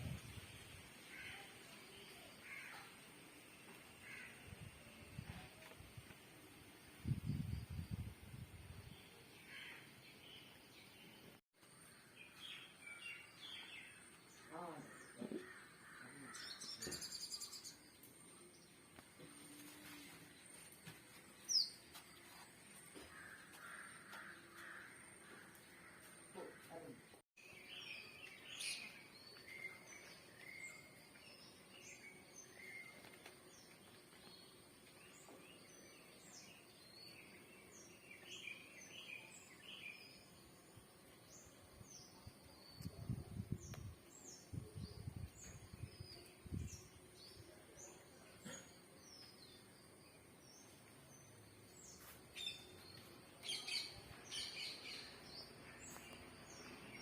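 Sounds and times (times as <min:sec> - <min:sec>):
small birds chirping: 0:21.3 - 0:57.0.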